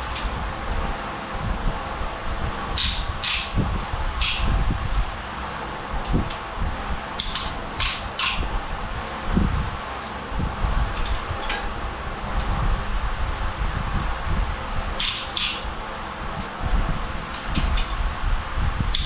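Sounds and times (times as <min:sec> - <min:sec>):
steady fan hum: 0:00.0 - 0:19.0
ratchet clicking: 0:02.8 - 0:03.6, 0:15.0 - 0:15.7.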